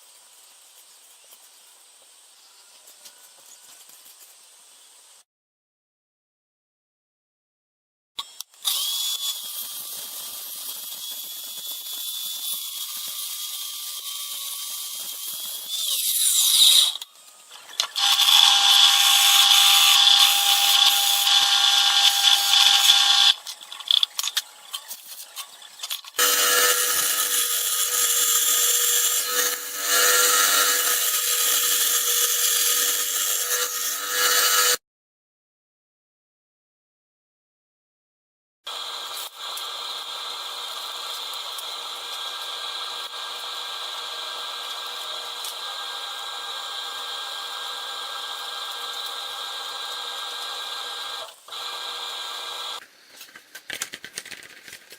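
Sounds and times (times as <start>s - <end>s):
small electric motor whining: 8.2s - 34.8s, 38.7s - 52.8s.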